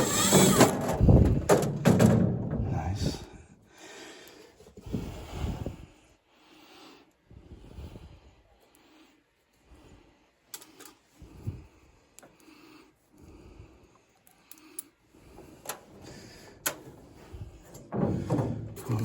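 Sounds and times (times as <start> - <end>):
clicks of small parts and tools: 10.5 - 11.0, 14.2 - 15.0.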